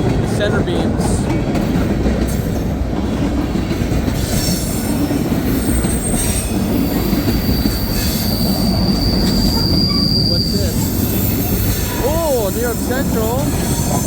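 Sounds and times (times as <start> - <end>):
freight train wheels rumbling: 0.0 - 14.0
high wheel squeals: 4.2 - 14.0.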